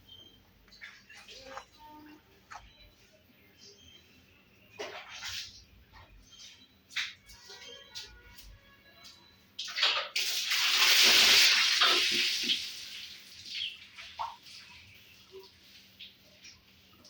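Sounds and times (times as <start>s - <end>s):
water running and splashing: 9.8s - 14.9s.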